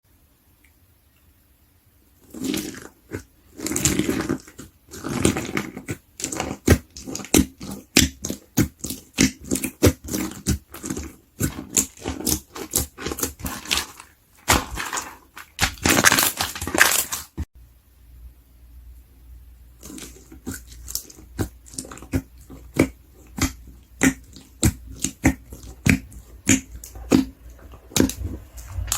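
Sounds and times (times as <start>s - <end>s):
slime squishing: 2.2s - 17.5s, 19.8s - 28.9s
sticky slime pops and crackles: 19.8s - 27.3s.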